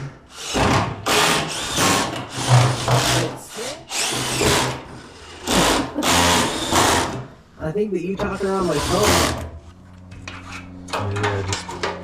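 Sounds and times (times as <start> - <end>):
power drill whining: 3.9 - 7.2, 8.3 - 9.5.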